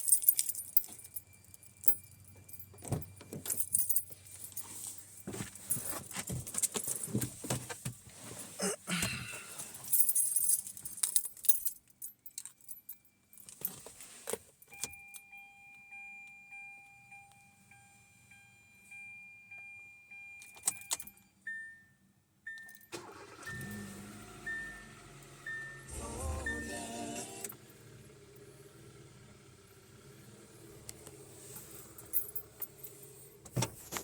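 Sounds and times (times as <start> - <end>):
car keys jangling: 0.0 - 7.8, 9.6 - 15.4, 20.4 - 21.3, 22.5 - 25.5, 30.6 - 34.0.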